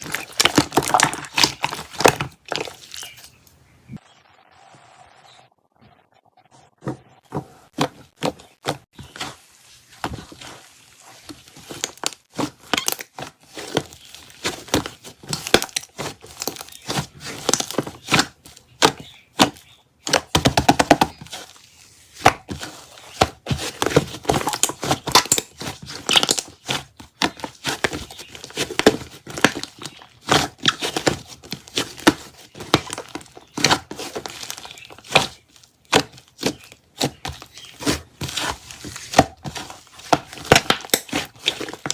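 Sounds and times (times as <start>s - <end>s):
slime crackling and popping: 0.0s - 3.4s.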